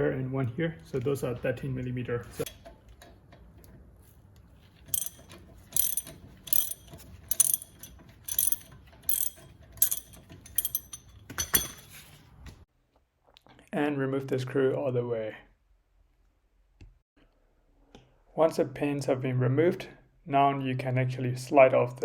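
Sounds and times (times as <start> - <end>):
ratchet wrench clicking: 4.9 - 11.1.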